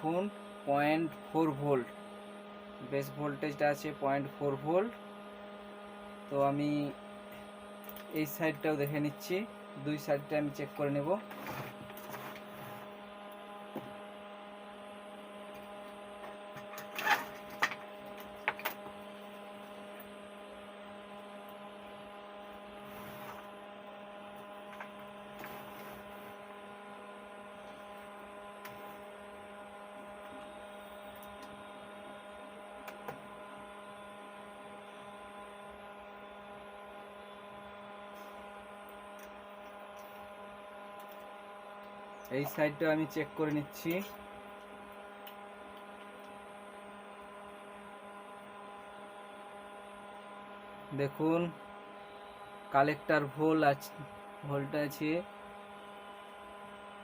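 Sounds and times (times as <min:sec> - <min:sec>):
electrical mains hum: 0:00.0 - 0:57.0.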